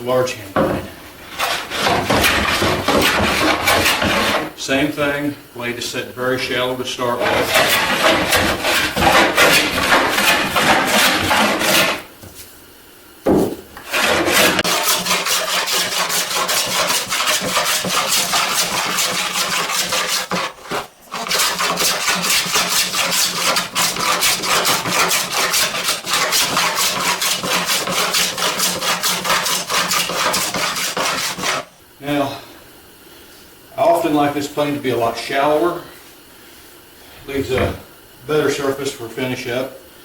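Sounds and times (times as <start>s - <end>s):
hand plane shaving wood: 1.3s - 4.5s, 7.1s - 12.1s, 13.8s - 31.7s.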